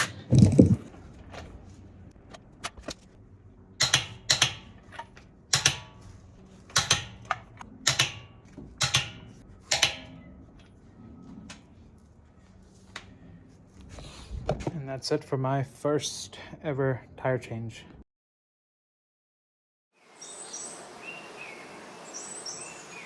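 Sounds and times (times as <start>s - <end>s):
torque wrench clicking: 3.8s - 5.0s, 5.6s - 6.0s, 6.7s - 8.2s, 8.8s - 10.1s.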